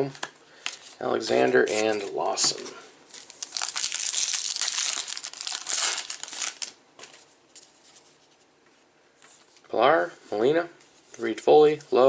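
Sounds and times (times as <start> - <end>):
faint handling of cards: 0.0 - 12.0
wrapper crinkling and tearing: 3.1 - 6.8.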